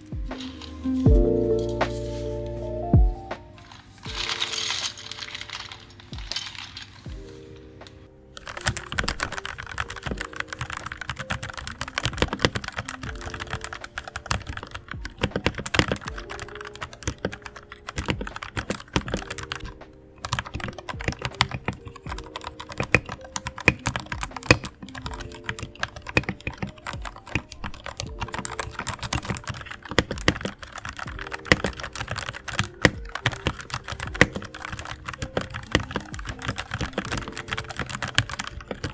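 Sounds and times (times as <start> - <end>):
background music: 0.0 - 38.9
mechanical keyboard typing: 8.3 - 38.9.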